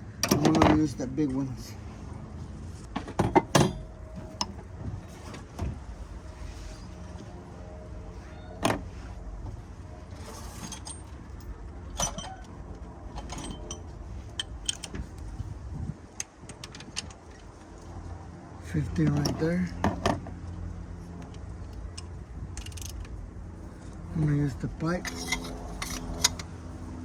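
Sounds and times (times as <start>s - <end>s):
low steady hum: 0.0s - 27.0s
metal tools clinking and scraping: 10.1s - 12.5s, 13.1s - 15.0s, 23.7s - 26.7s.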